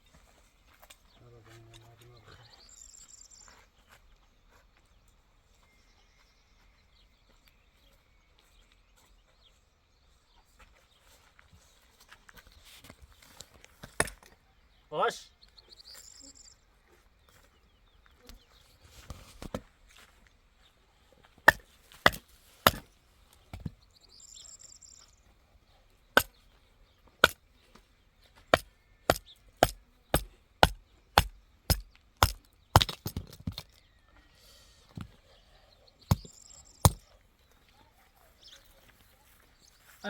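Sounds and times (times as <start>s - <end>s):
sharp chopping blows: 21.5s - 22.9s, 28.5s - 33.8s, 36.1s - 36.3s.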